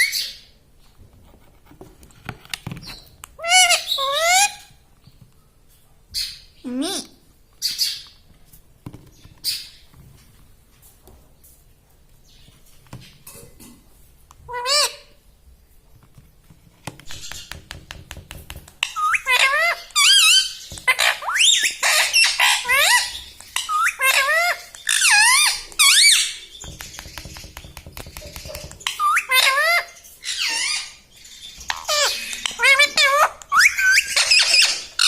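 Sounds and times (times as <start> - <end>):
parakeet squawking: 14.5 - 15.2, 18.8 - 26.4, 28.5 - 31.0, 31.7 - 35.0.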